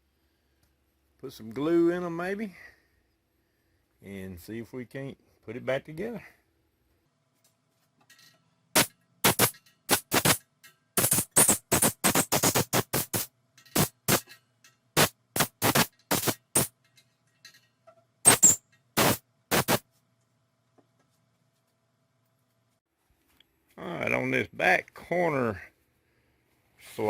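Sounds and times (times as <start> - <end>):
compressed air blasting: 8.8 - 10.4, 11.0 - 14.3, 15.0 - 16.7, 18.3 - 19.8.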